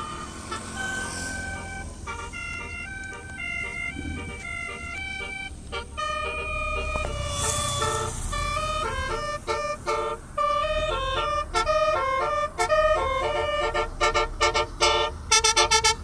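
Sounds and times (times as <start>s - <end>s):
bus musical horn melody: 0.0s - 16.0s
low rumble: 3.9s - 4.8s.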